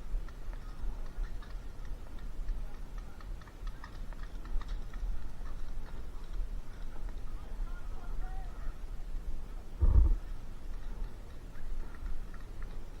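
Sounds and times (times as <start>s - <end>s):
low rumble: 9.8s - 10.2s.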